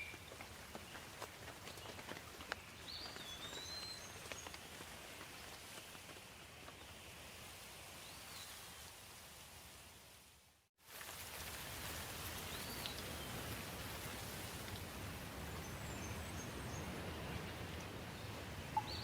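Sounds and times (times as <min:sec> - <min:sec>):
steady rain hiss: 0:02.0 - 0:19.0
bird chirps: 0:18.7 - 0:19.0
rain drop ticks: 0:18.7 - 0:19.0.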